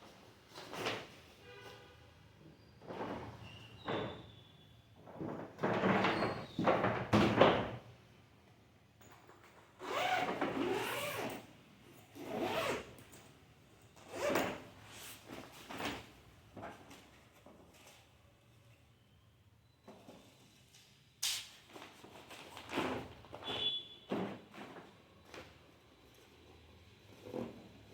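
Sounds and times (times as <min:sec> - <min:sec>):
suitcase zipper rasping: 0:09.8 - 0:11.5, 0:12.2 - 0:12.9, 0:14.0 - 0:14.6.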